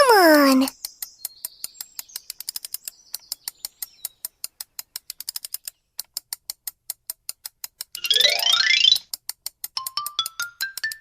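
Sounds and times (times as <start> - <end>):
rapid light clicks: 0.7 - 8.0.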